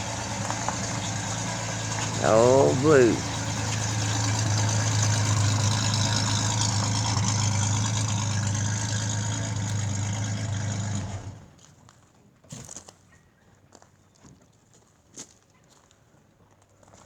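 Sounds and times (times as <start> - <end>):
truck engine idling: 0.0 - 11.4.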